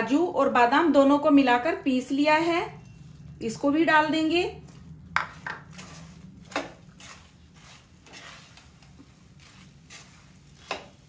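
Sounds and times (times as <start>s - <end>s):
spoon scraping in pan: 4.7s - 11.0s.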